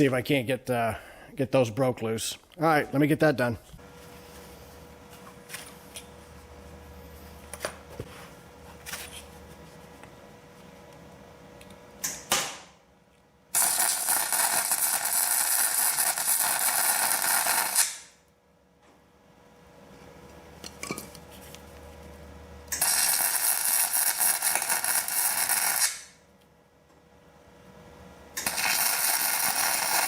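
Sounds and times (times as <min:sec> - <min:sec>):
welding arc crackling: 0:13.6 - 0:18.2, 0:22.7 - 0:26.2, 0:28.4 - 0:30.0.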